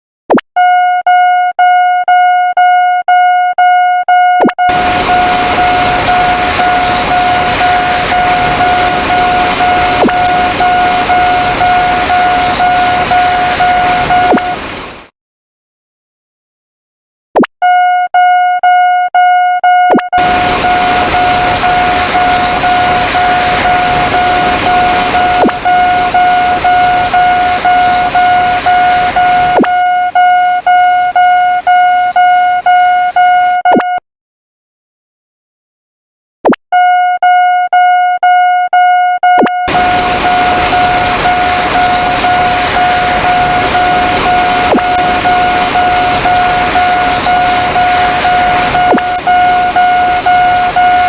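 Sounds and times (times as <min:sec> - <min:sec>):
crossing warning bell dinging: 0:04.7 - 0:14.3
train passing: 0:04.8 - 0:14.2, 0:39.7 - 0:48.8.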